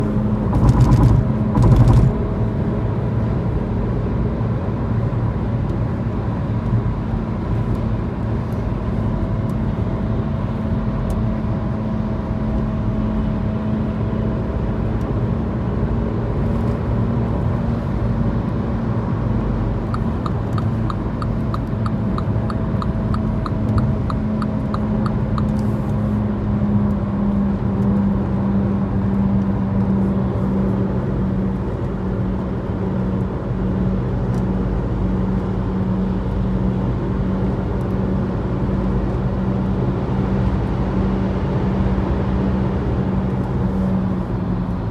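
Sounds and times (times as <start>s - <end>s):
low running rumble: 0.0s - 3.1s
fast regular ticking: 19.9s - 25.5s.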